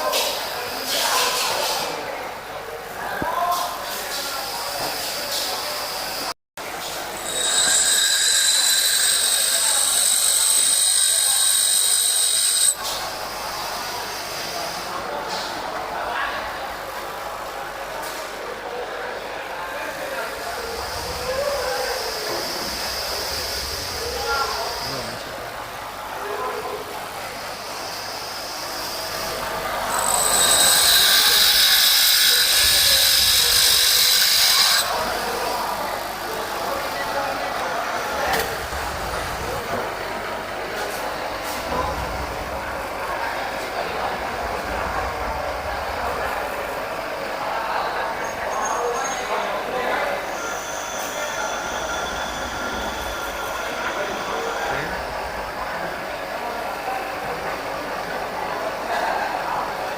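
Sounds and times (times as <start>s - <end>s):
tool bit on grinding wheel: 7.2s - 12.8s, 29.8s - 34.9s.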